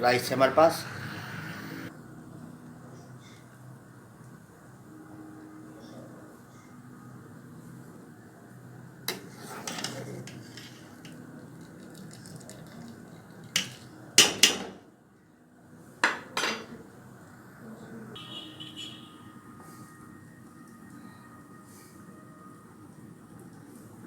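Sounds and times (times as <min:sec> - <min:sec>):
metal pots and utensils clinking: 0:09.1 - 0:11.2, 0:13.5 - 0:14.6.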